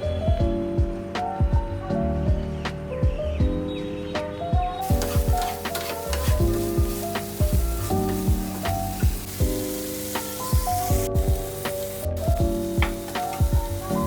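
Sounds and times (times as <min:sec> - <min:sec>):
gentle music with steady beat: 0:00.0 - 0:14.0
food sizzling in a frying pan: 0:04.8 - 0:14.0.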